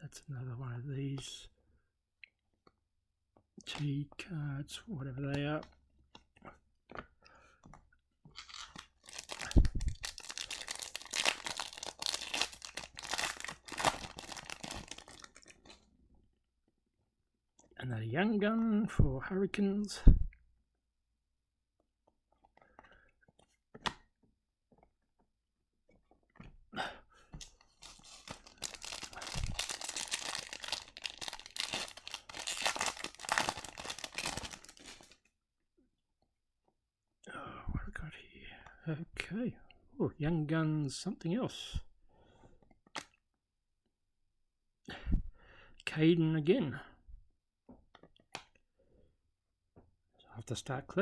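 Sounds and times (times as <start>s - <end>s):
foil wrapper crinkling: 8.4s - 15.8s, 27.4s - 35.2s.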